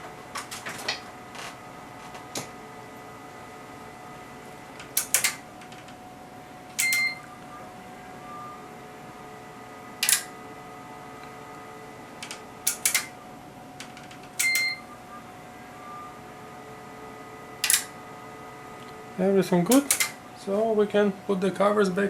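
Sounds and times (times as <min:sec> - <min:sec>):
faint equipment whine: 0:00.0 - 0:22.0
keys and relays clicking: 0:04.8 - 0:06.0, 0:06.7 - 0:07.3, 0:10.0 - 0:10.4, 0:12.2 - 0:13.2, 0:13.8 - 0:14.8, 0:17.6 - 0:18.0, 0:19.7 - 0:20.2
short electronic beep: 0:06.8 - 0:08.6, 0:14.4 - 0:16.2.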